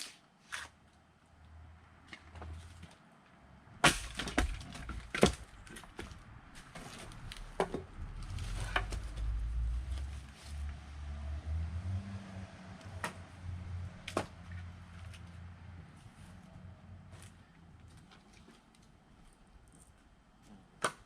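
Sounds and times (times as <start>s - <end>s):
axe splitting logs: 3.8s - 9.0s, 12.9s - 13.2s, 14.0s - 14.5s, 20.7s - 21.0s.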